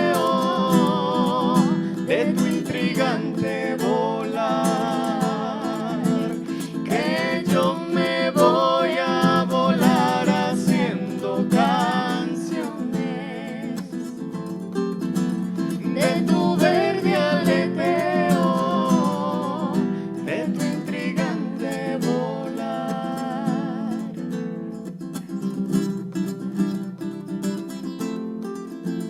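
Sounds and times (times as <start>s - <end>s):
person singing: 0.0s - 14.4s, 15.6s - 24.3s
acoustic guitar strumming: 0.0s - 29.0s.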